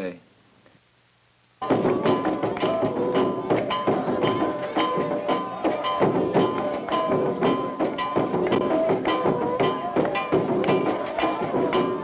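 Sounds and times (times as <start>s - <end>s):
latin music with percussion: 1.6s - 12.0s.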